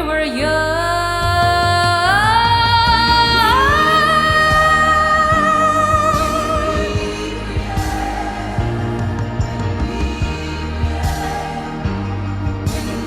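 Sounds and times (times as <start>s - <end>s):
backing track: 0.0s - 13.0s
person singing long note: 3.3s - 7.4s.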